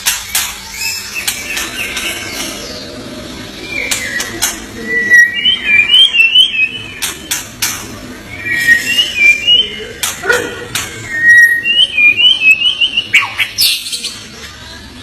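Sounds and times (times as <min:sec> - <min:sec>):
songbird whistling and warbling: 0:03.6 - 0:07.4, 0:08.3 - 0:10.1, 0:11.0 - 0:14.0.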